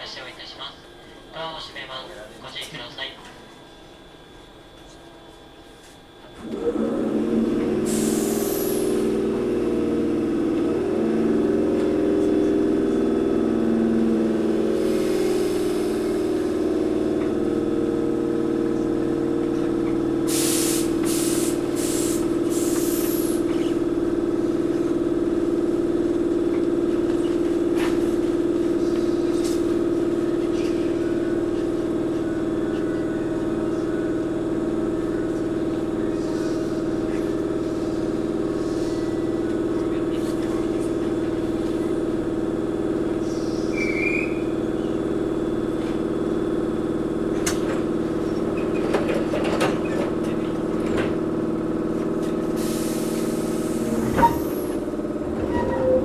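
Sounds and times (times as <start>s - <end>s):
traction motors and gears humming: 0.6s - 56.0s
short air hisses: 20.3s - 23.4s, 52.6s - 54.6s.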